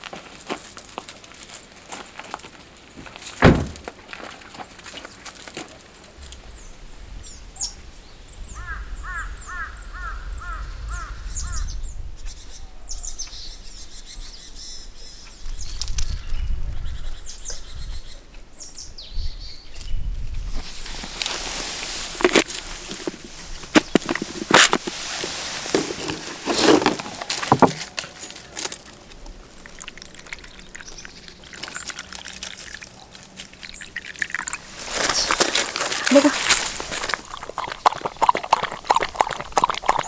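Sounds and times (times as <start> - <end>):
sharp knock: 3.4 - 3.9.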